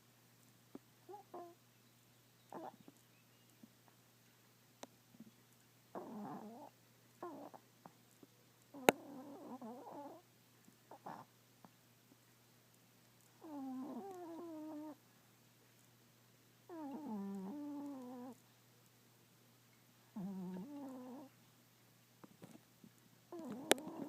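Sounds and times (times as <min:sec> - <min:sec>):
dog snoring: 0:01.1 - 0:01.6, 0:02.5 - 0:02.7, 0:05.9 - 0:07.6, 0:08.7 - 0:10.2, 0:10.9 - 0:11.3, 0:13.4 - 0:15.0, 0:16.7 - 0:18.4, 0:20.2 - 0:21.3, 0:23.3 - 0:24.0.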